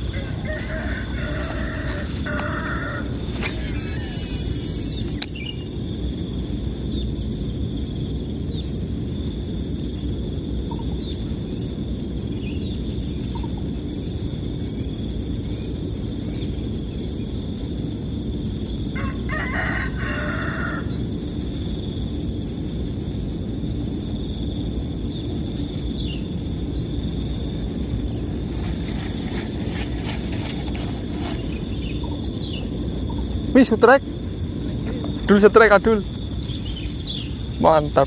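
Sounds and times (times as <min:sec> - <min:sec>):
rooster crowing: 0:00.0 - 0:05.0, 0:18.9 - 0:21.0
outdoor background noise: 0:00.0 - 0:38.0.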